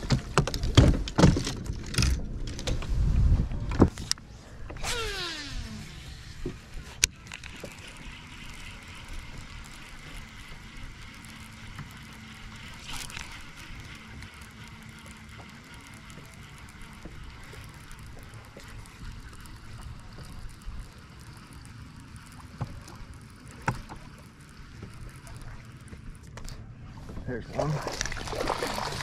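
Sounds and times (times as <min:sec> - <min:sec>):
wind buffeting microphone: 0:02.3 - 0:04.0.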